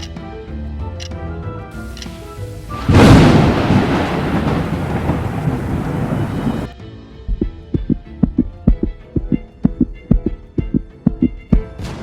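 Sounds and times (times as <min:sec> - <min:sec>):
music with heartbeat-like thump: 0:07.2 - 0:12.0.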